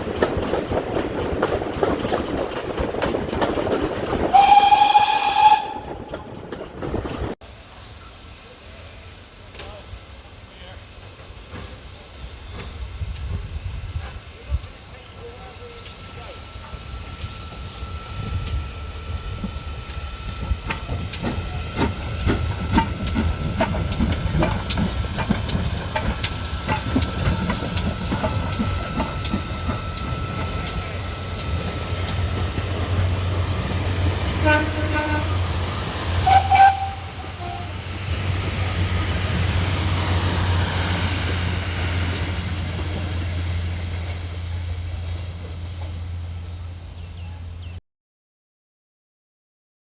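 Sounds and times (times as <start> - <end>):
wheels clicking over rail joints: 0.0 - 7.4, 19.4 - 43.3
steam train rumbling: 0.0 - 47.8
train whistle: 4.3 - 6.0, 34.3 - 35.5, 36.1 - 37.9
steam hissing: 4.3 - 45.4.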